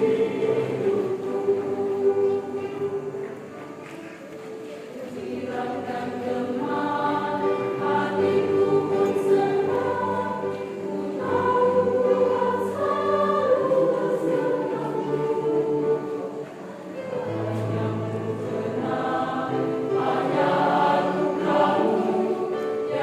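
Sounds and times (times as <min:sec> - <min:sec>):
choir singing in harmony: 0:00.0 - 0:23.0.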